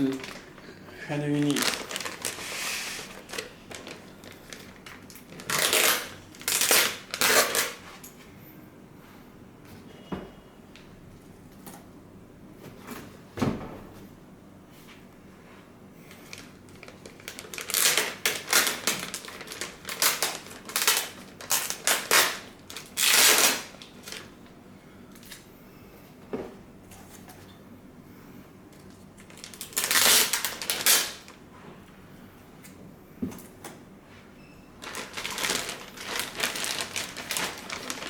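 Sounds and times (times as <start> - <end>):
packaging rustling and scraping: 0.0 - 8.1, 16.1 - 24.3, 28.9 - 31.4, 34.8 - 38.0.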